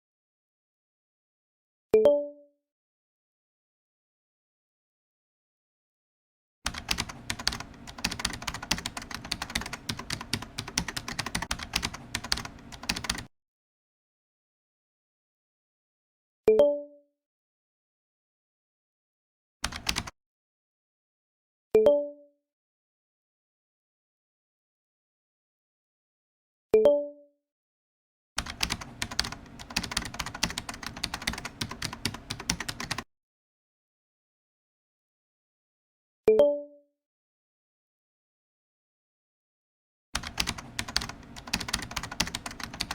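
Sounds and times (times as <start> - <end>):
keyboard typing: 6.7 - 13.3, 19.6 - 20.2, 28.4 - 33.1, 40.2 - 42.9.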